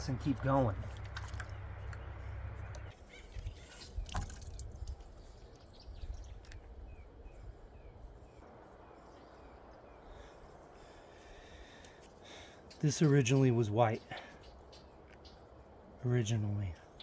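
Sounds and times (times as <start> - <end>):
water dripping: 0.0 - 2.9, 3.7 - 5.2
bird chirping: 0.0 - 4.2, 12.6 - 15.6.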